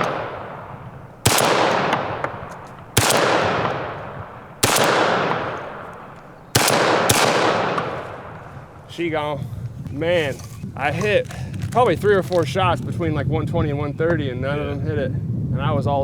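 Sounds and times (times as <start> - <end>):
shotgun shots with rolling echo: 0.0 - 9.0.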